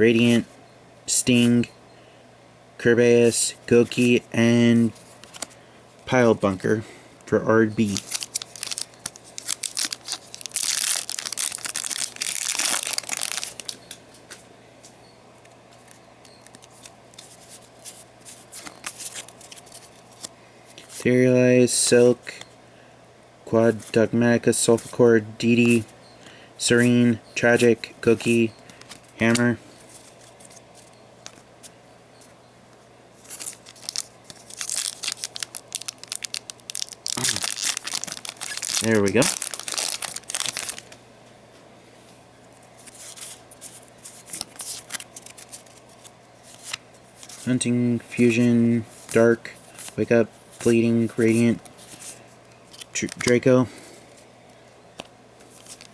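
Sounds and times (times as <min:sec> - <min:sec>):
cards clicking and rustling: 0:04.9 - 0:05.6, 0:07.8 - 0:14.0, 0:15.8 - 0:21.0, 0:26.8 - 0:31.5, 0:33.2 - 0:41.0, 0:42.8 - 0:47.5, 0:48.2 - 0:53.5, 0:55.0 - 0:55.9
foil wrapper tearing and crinkling: 0:07.8 - 0:13.8, 0:33.2 - 0:41.0, 0:44.2 - 0:45.8.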